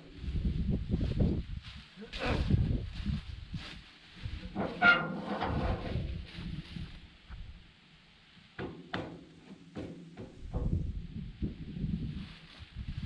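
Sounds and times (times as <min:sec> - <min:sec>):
low handling noise: 0:04.3 - 0:07.6
sharp knocks and clunks: 0:08.6 - 0:10.8.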